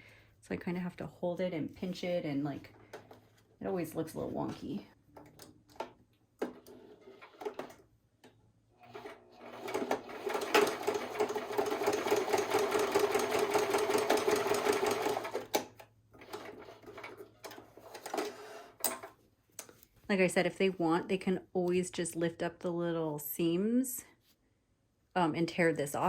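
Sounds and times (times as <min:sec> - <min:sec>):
sewing machine stitching: 0:06.4 - 0:07.8, 0:08.8 - 0:19.0.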